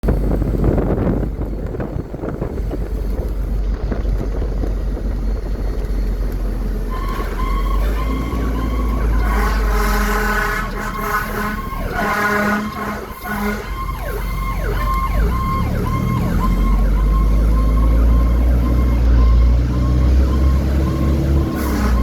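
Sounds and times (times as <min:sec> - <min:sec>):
fire engine rumble: 0:00.0 - 0:22.0
siren repeated notes: 0:06.8 - 0:22.0.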